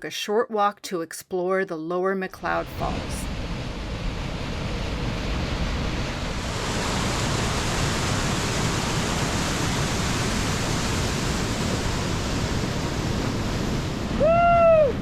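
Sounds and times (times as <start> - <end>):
waterfall roaring: 5.1 - 15.0.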